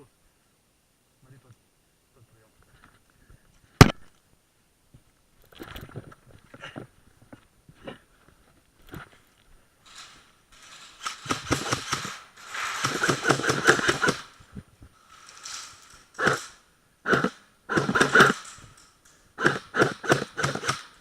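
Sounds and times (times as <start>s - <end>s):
airsoft gun shots: 11.0s - 14.4s, 15.6s - 18.6s, 19.4s - 21.0s.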